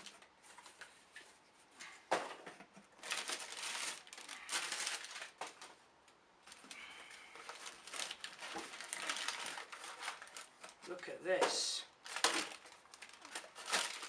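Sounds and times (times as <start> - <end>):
packaging rustling and scraping: 2.9 - 5.8, 6.4 - 11.0, 12.0 - 14.0.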